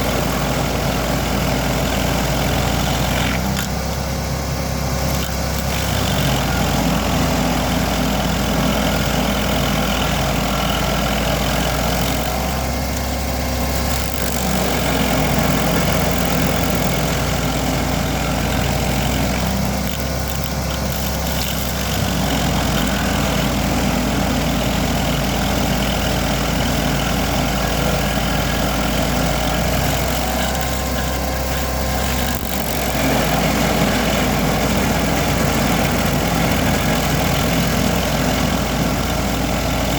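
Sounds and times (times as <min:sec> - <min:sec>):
cutter wheel grinding stump: 0:00.0 - 0:39.9
stump grinder engine running: 0:00.0 - 0:39.9.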